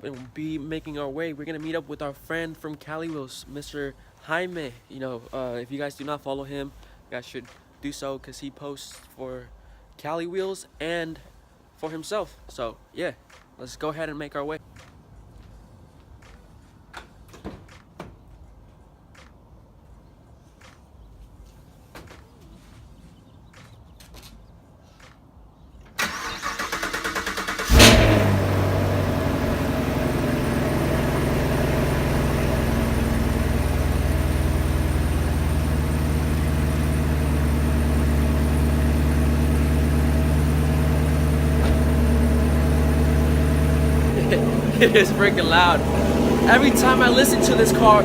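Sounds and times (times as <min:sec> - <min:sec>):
car engine starting and idling: 0:26.0 - 0:48.0.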